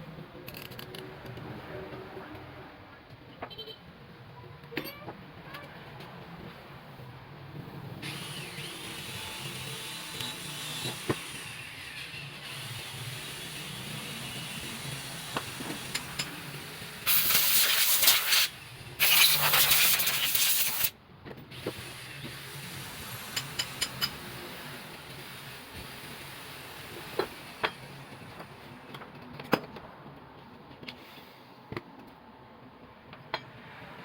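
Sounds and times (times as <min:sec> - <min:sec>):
loud hissing bursts: 0:16.6 - 0:21.0.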